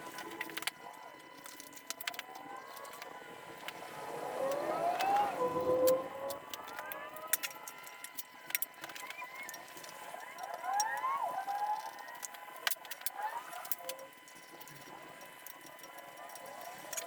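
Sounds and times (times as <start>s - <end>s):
siren wailing: 2.1s - 8.1s, 8.9s - 14.1s.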